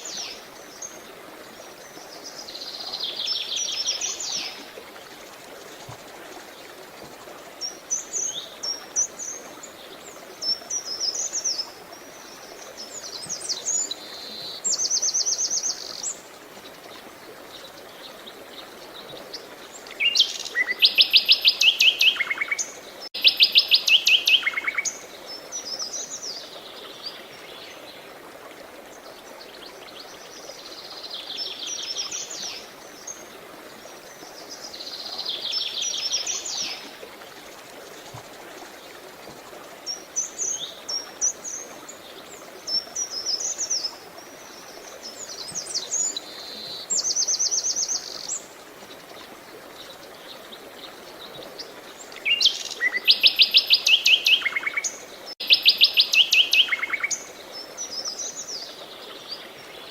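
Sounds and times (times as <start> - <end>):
songbirds singing: 28.9 - 59.9.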